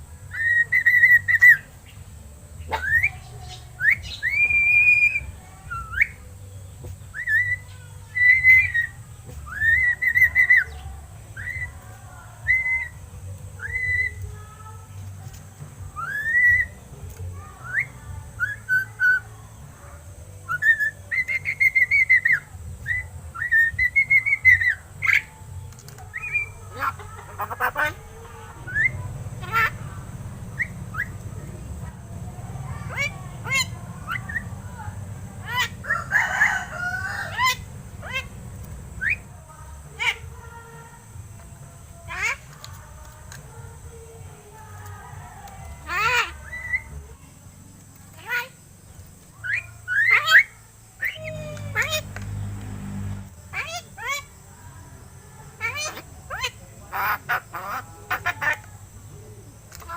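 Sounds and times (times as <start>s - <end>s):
myna bird whistling: 0.3s - 1.7s, 2.6s - 6.2s, 7.1s - 11.8s, 13.6s - 14.3s, 15.9s - 16.9s, 17.6s - 19.3s, 20.4s - 28.0s, 28.6s - 29.9s, 30.5s - 32.0s, 32.9s - 34.8s, 39.0s - 39.3s, 49.4s - 52.1s
bird chirps: 0.3s - 2.0s, 2.6s - 11.9s, 20.4s - 39.3s.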